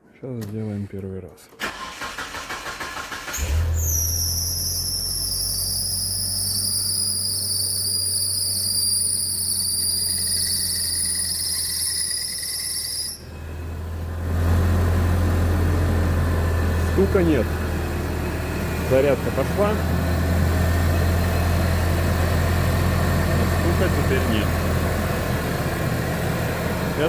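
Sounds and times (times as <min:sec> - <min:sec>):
car engine starting and idling: 0:01.6 - 0:06.8, 0:13.2 - 0:27.0
high-pitched steady whine: 0:04.4 - 0:13.2.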